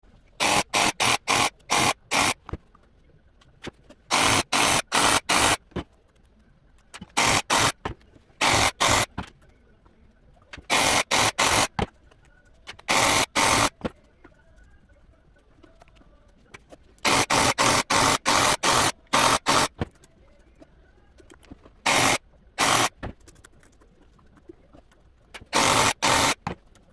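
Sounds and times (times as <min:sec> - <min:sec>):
machine hissing bursts: 0:00.4 - 0:02.5, 0:04.1 - 0:05.6, 0:07.1 - 0:07.8, 0:08.4 - 0:09.2, 0:10.7 - 0:11.8, 0:12.8 - 0:13.8, 0:17.0 - 0:19.8, 0:21.9 - 0:23.1, 0:25.5 - 0:26.6.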